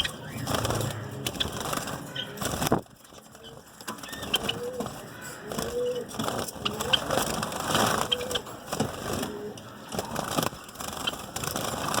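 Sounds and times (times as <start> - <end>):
finches chirping: 0.0 - 2.6, 3.3 - 8.5.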